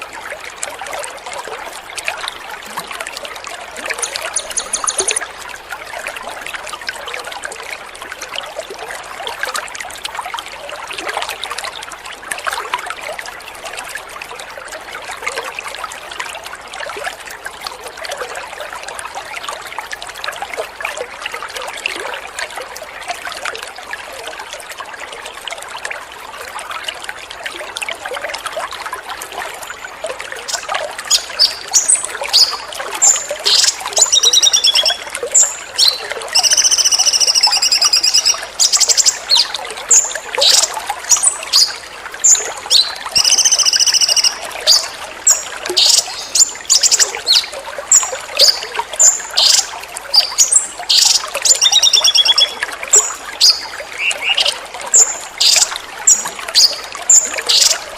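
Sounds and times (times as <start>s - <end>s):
water trickling: 0.0s - 57.9s
songbird singing: 3.9s - 5.3s, 30.4s - 57.9s.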